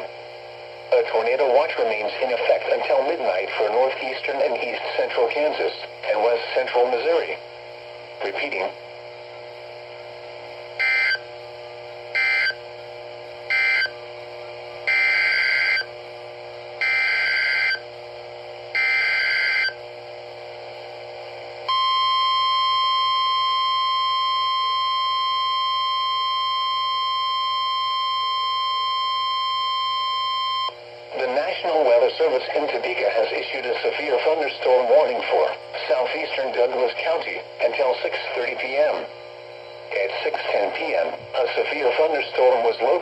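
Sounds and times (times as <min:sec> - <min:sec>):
high steady warning alarm tone: 0:10.8 - 0:11.3, 0:12.1 - 0:12.7, 0:13.5 - 0:14.0, 0:14.8 - 0:15.9, 0:16.8 - 0:17.8, 0:18.7 - 0:19.8, 0:21.7 - 0:30.8.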